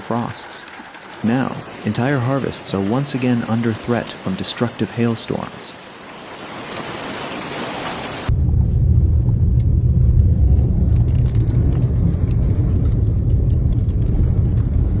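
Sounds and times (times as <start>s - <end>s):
wind buffeting microphone: 8.3s - 15.0s.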